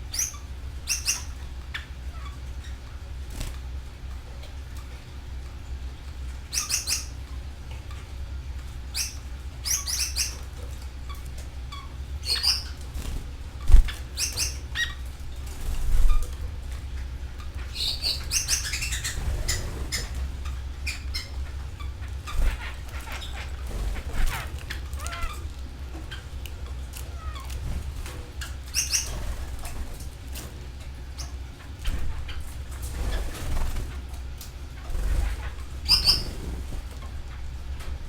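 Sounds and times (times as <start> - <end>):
steady low hum: 0.0 - 38.0
canaries chirping: 0.1 - 3.5, 6.4 - 7.3, 8.9 - 16.2, 17.4 - 30.5, 31.1 - 34.0, 34.8 - 37.0
wings flapping: 3.2 - 3.7, 12.3 - 16.9, 17.6 - 38.0.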